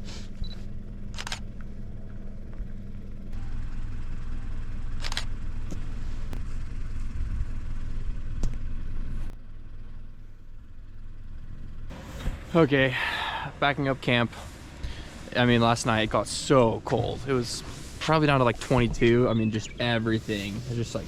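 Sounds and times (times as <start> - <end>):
steady low rumble: 0.0 - 21.0
camera shutter clicks: 5.0 - 5.3.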